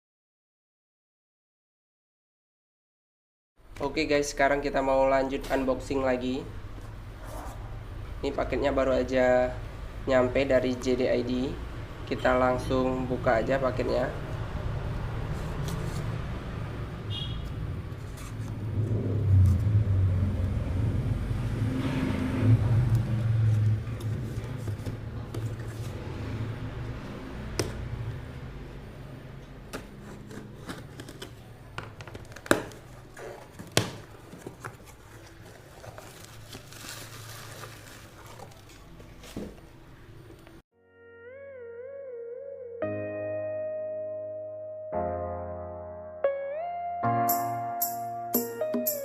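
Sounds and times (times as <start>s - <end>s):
packaging rustling and scraping: 15.3s - 16.1s, 18.0s - 18.6s, 23.5s - 26.0s, 29.9s - 39.6s.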